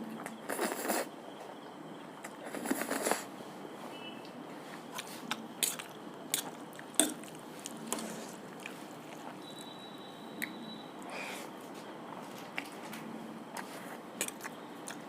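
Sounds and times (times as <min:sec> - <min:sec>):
sharp wet clicks and crunches: 0:04.9 - 0:09.3, 0:12.4 - 0:15.0
chewing and biting: 0:04.9 - 0:09.4, 0:12.4 - 0:15.0.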